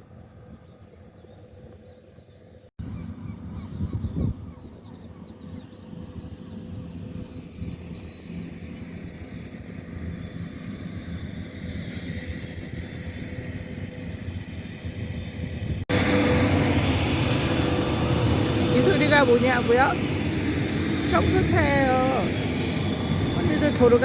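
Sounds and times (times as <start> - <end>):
street-cleaning truck humming: 7.4 - 24.0.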